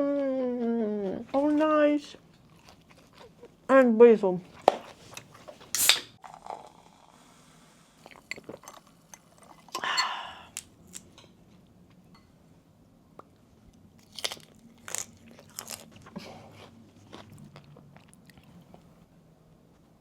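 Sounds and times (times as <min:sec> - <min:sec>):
crunching and chewing: 0:02.2 - 0:03.6, 0:13.7 - 0:19.0.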